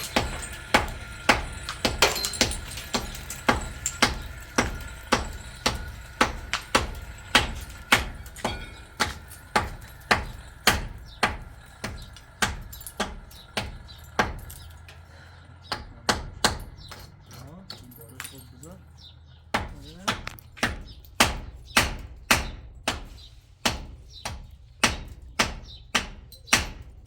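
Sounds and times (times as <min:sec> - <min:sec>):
hammer striking metal: 0:00.0 - 0:14.8.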